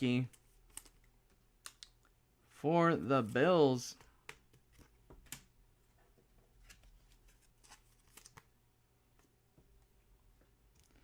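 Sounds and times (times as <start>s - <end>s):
trading cards clicking and rustling: 0.2s - 2.1s, 6.6s - 8.5s.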